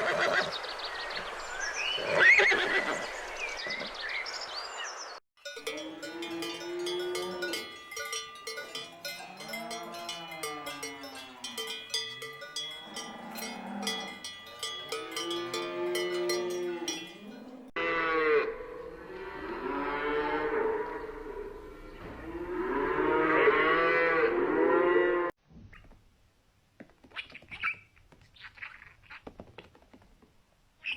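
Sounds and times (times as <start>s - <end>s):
cowbells clanking: 5.4s - 17.7s
cattle mooing: 5.7s - 11.8s, 12.8s - 25.3s.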